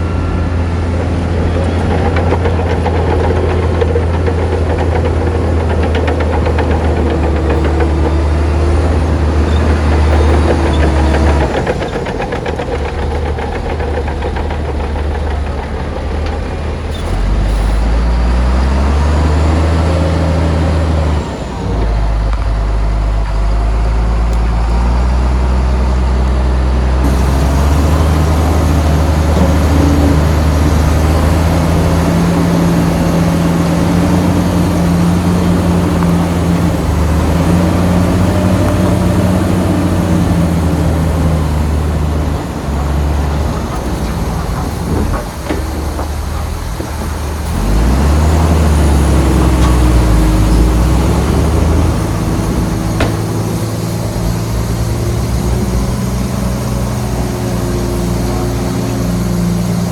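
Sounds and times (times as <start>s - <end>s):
heavy diesel engine under load: 0.0s - 59.9s.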